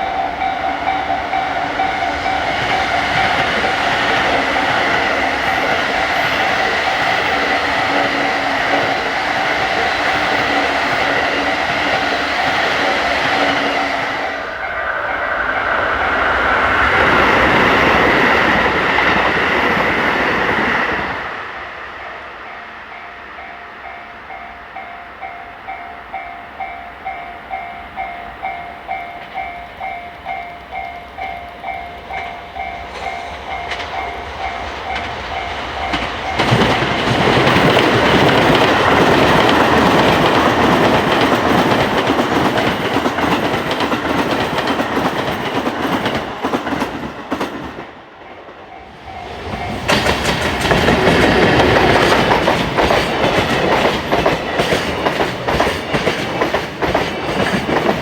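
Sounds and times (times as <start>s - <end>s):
train wheel clatter: 0.0s - 14.2s, 32.1s - 58.0s
level-crossing warning bell: 0.0s - 20.1s, 22.0s - 58.0s.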